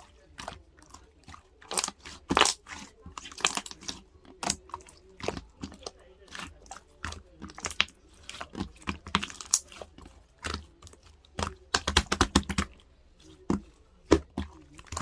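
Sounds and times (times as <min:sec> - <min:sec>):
slime clicking and popping: 0:01.6 - 0:12.8.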